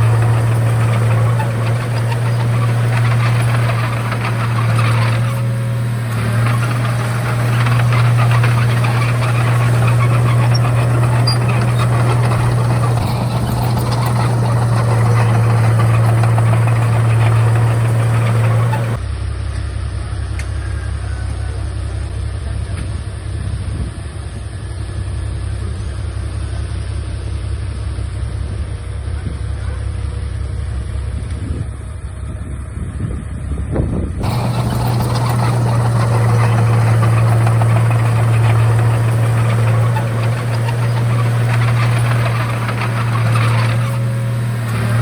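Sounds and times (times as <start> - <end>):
diesel engine running: 0.0 - 19.0, 34.2 - 45.0.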